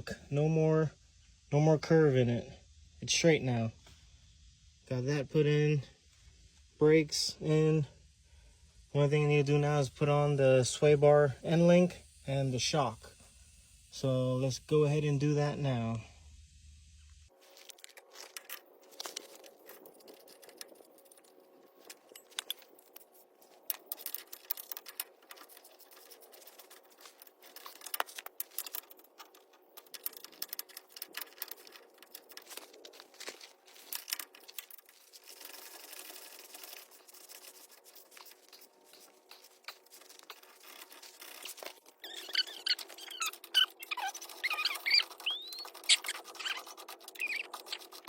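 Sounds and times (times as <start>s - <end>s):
faint steady hum: 0.0s - 48.0s
metal parts clinking and scraping: 17.5s - 45.6s.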